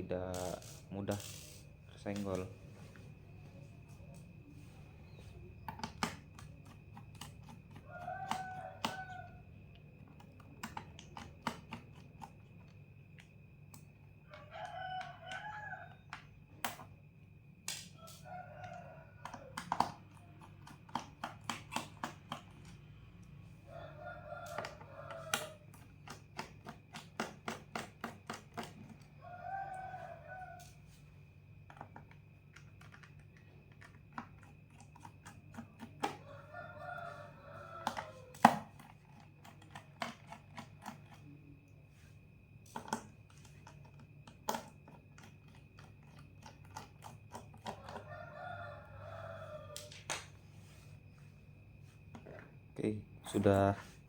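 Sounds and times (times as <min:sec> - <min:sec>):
thin whine and low hum: 0:00.0 - 0:54.0
rooster crowing: 0:07.7 - 0:09.6, 0:14.2 - 0:16.1, 0:18.0 - 0:20.4, 0:23.4 - 0:25.7, 0:28.7 - 0:31.0, 0:36.0 - 0:38.5, 0:47.4 - 0:50.1.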